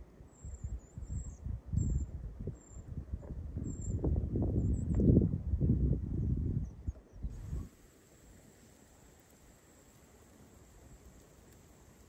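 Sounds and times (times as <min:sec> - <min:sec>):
faint even hiss: 0:07.3 - 0:12.0.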